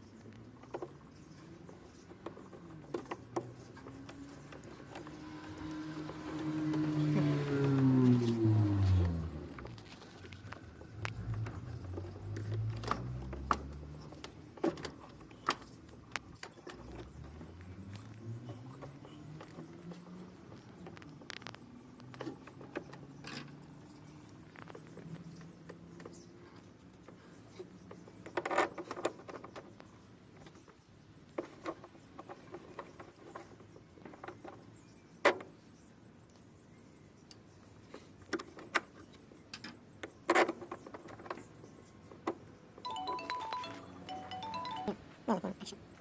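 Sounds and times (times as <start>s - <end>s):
music: 42.9s - 45.0s.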